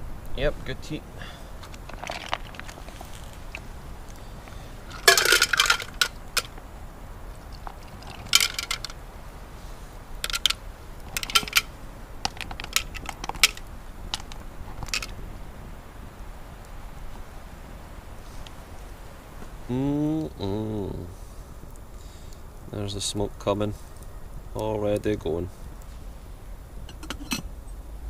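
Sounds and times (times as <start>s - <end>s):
shells clinking against metal can: 4.9s - 6.2s.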